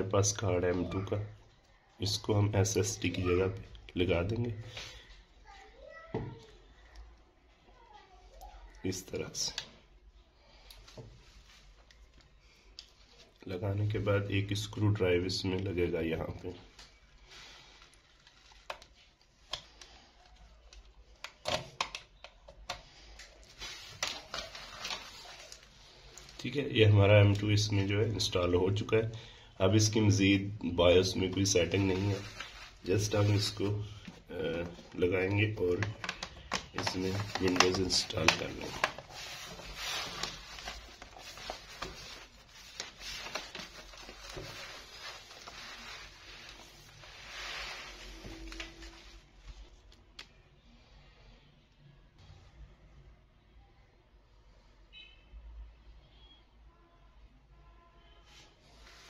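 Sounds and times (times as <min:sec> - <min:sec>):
laptop clicks and taps: 0:35.8 - 0:39.0.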